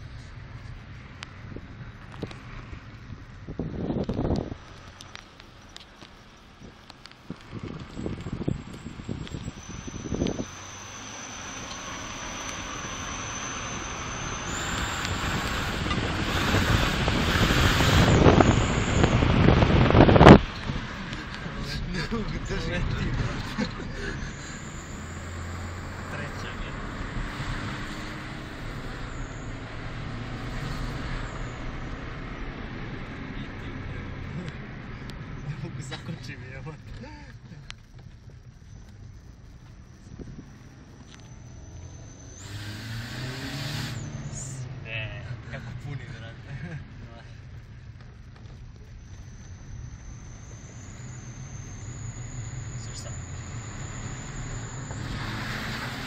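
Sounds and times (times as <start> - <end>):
car engine accelerating: 0.0 - 56.0
road noise: 0.0 - 56.0
rushing wind: 1.4 - 5.2, 6.5 - 33.4
thin high whistle: 8.8 - 19.2, 23.4 - 31.7, 39.7 - 44.7, 48.9 - 56.0.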